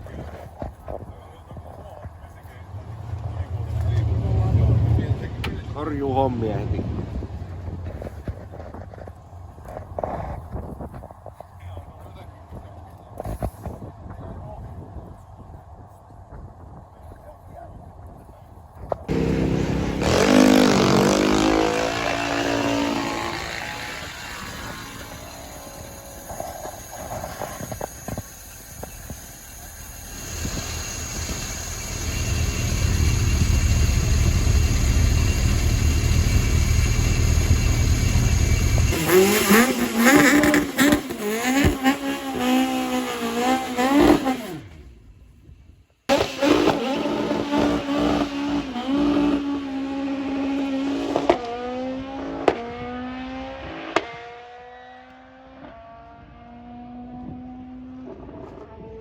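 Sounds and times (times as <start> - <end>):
race car engine revving: 1.4 - 8.4, 19.1 - 44.9, 46.1 - 59.0.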